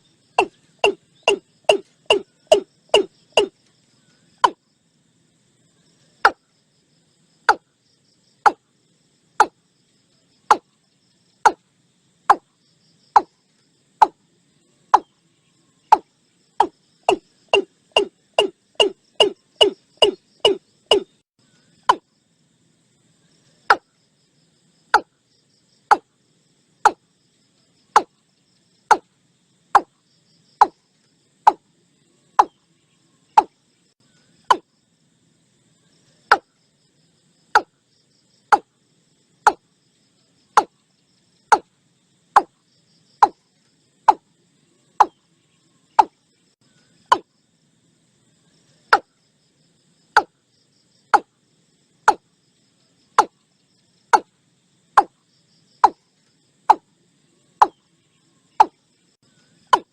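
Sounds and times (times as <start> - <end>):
bird calling sharp notes: 0.4 - 3.6, 15.9 - 21.2.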